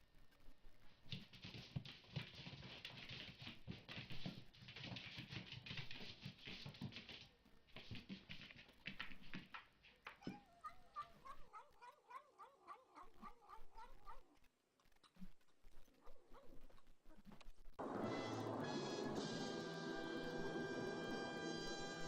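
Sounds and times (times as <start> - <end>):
pet animal scrabbling: 1.1 - 17.5.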